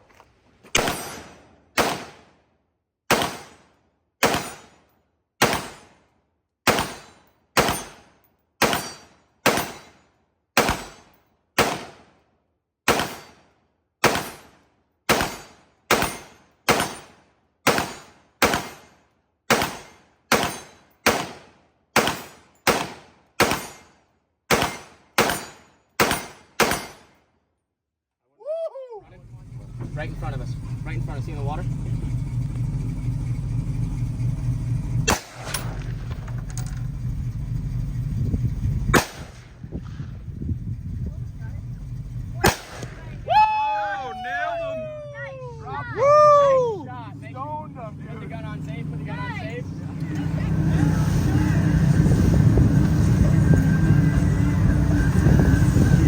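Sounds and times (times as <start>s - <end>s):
rifle shots with echo: 0.8s - 2.5s, 3.1s - 4.8s, 5.4s - 6.0s, 6.7s - 10.0s, 10.6s - 12.2s, 12.9s - 13.4s, 14.0s - 18.9s, 19.5s - 23.9s, 24.5s - 27.2s, 35.0s - 36.3s, 38.9s - 40.3s, 42.4s - 43.2s.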